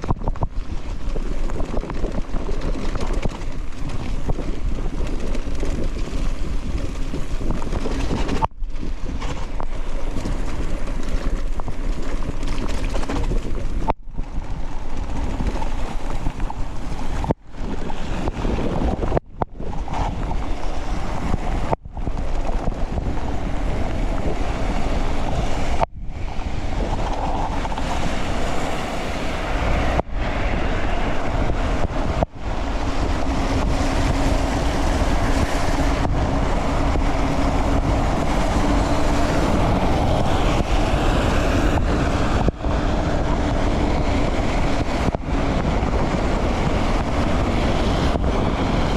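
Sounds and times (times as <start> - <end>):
bike tyre noise: 0.0 - 48.9
wind on camera microphone: 0.0 - 48.9
steady low hum: 23.2 - 48.9.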